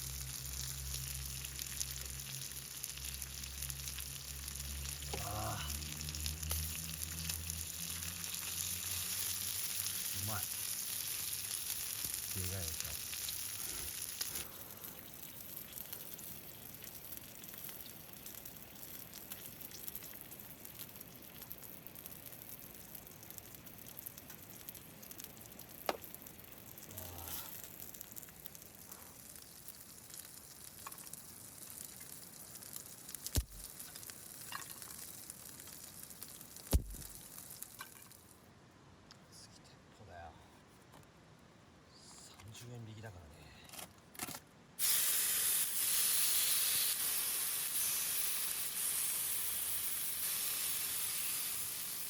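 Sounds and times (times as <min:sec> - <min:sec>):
meat sizzling on a grill: 0:00.0 - 0:38.3, 0:44.8 - 0:52.0
sharp clicks and pops: 0:14.0 - 0:26.9, 0:27.5 - 0:38.2.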